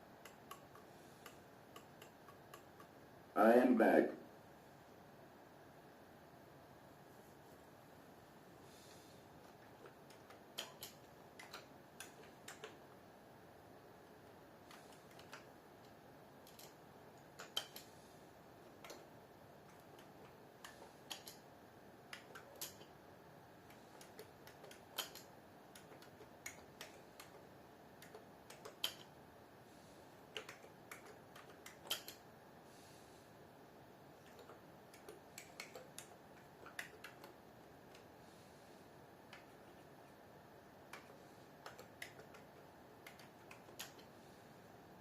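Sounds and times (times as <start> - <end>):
faint steady hiss: 0.0 - 45.0
computer keyboard keystrokes: 9.8 - 12.8, 16.4 - 17.9, 19.7 - 21.4, 23.7 - 27.4, 28.0 - 29.1, 30.3 - 32.2, 34.2 - 38.1, 40.9 - 44.1.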